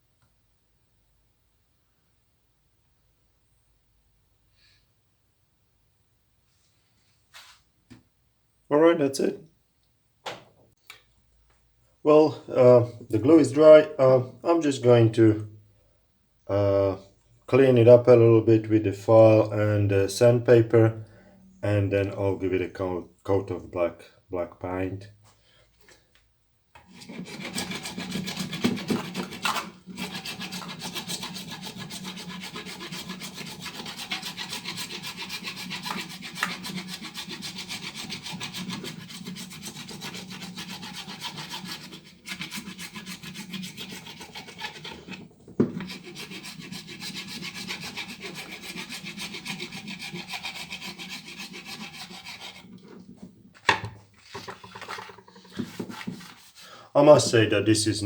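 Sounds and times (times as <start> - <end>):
abrasive rasping on filler: 26.8 - 53.2.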